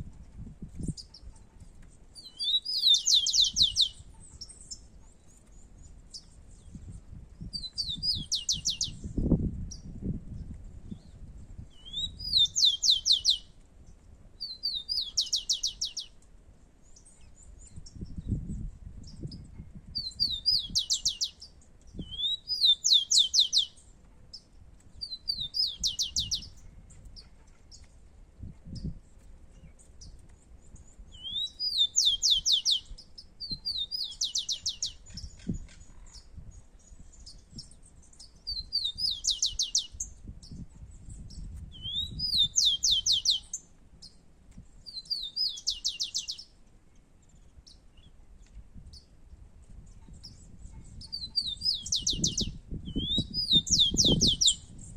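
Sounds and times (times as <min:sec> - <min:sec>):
sparrows singing: 0:00.4 - 0:13.6, 0:14.4 - 0:44.2, 0:44.8 - 0:48.2, 0:49.8 - 0:54.9.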